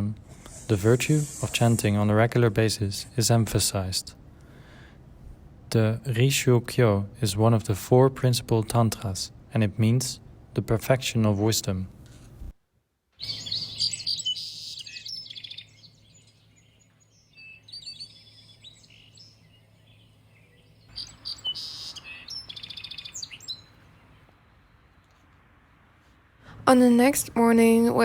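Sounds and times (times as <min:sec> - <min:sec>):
faint low hum: 0:00.0 - 0:13.0
birds chirping: 0:00.2 - 0:04.9, 0:13.2 - 0:25.5.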